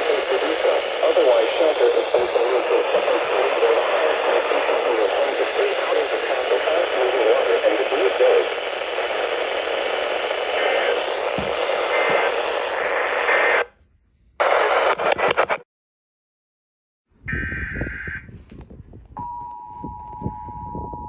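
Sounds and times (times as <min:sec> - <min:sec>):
crackly burst of static: 0:00.0 - 0:13.6, 0:14.4 - 0:15.6
radio static hiss: 0:00.0 - 0:13.7, 0:14.4 - 0:15.6.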